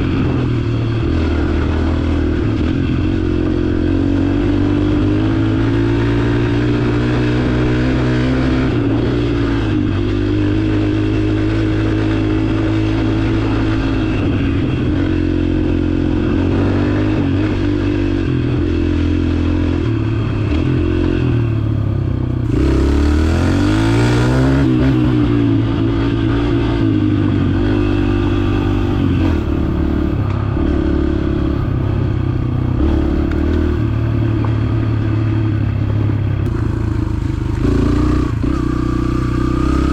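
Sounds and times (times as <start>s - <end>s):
dirt bike engine running: 0.0s - 39.9s.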